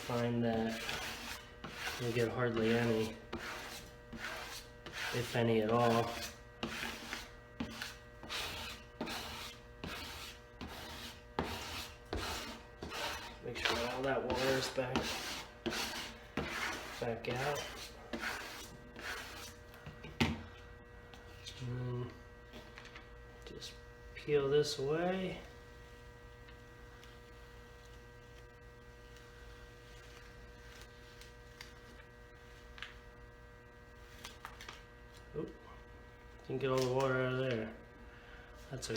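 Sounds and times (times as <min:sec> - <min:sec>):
squeegee scraping wet paper: 0:00.0 - 0:19.6
steady electrical hum: 0:00.0 - 0:38.9.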